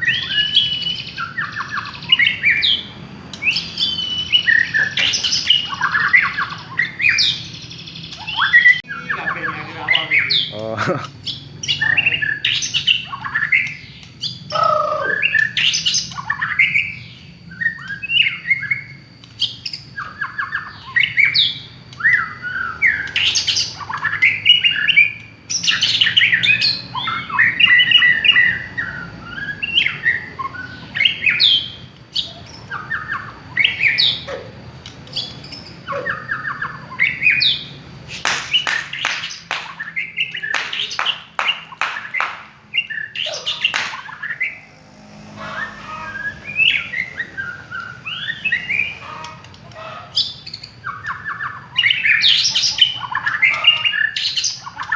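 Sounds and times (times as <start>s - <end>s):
bird singing whistled phrases: 0.0s - 10.5s, 11.7s - 34.4s
bird chattering notes: 14.4s - 15.6s, 38.0s - 42.6s.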